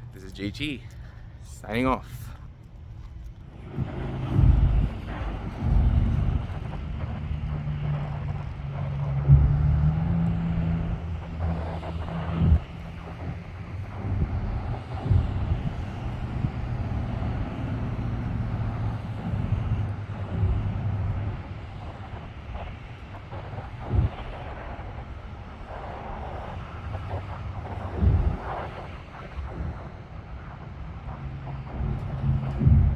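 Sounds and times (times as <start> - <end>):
car engine and road hum: 0.0 - 32.9.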